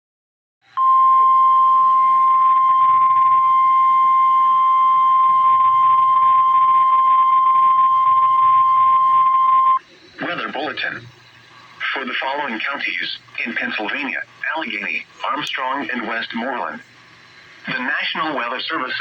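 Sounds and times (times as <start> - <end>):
steady high alarm tone: 0.8 - 9.8.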